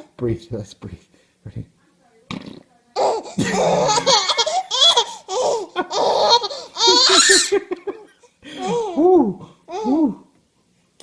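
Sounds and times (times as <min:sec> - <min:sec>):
baby laughing: 0:03.0 - 0:09.0.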